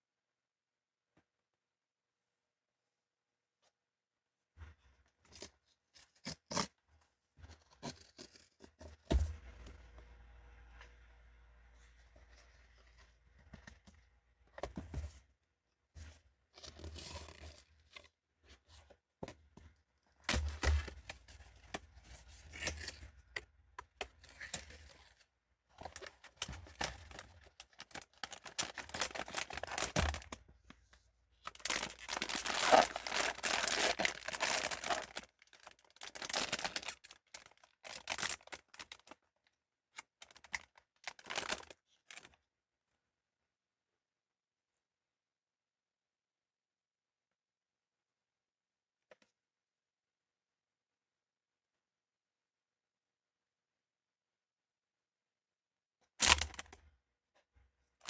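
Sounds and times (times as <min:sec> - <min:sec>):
packaging tearing and crinkling: 0:25.8 - 0:30.4, 0:31.5 - 0:39.2, 0:40.2 - 0:42.3.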